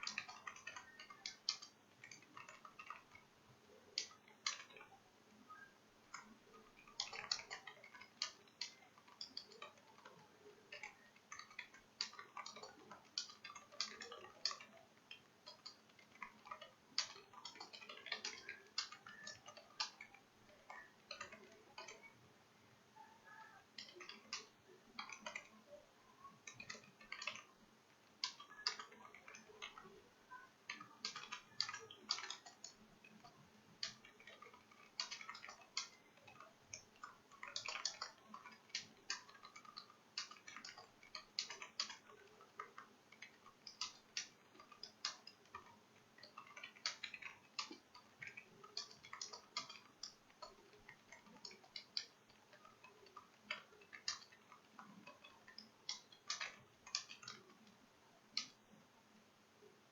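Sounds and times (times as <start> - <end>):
computer keyboard typing: 0.0 - 22.3, 22.9 - 58.9.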